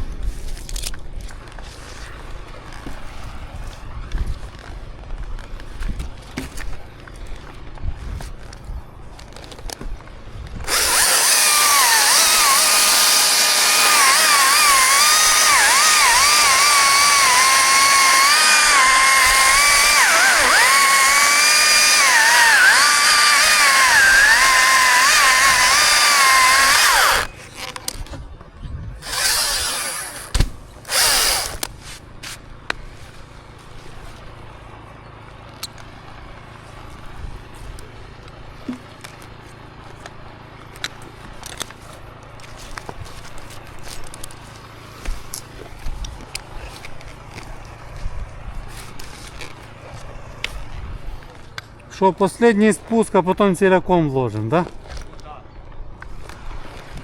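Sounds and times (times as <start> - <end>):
chainsaw cutting at full throttle: 10.6 - 27.3, 29.0 - 31.7
chainsaw revving: 10.6 - 27.3, 29.0 - 31.7.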